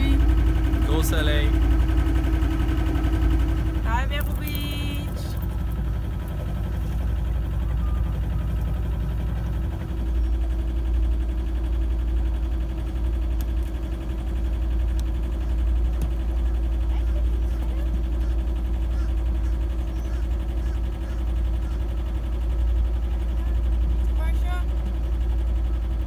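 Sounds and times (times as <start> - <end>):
boat engine droning: 0.0 - 26.0.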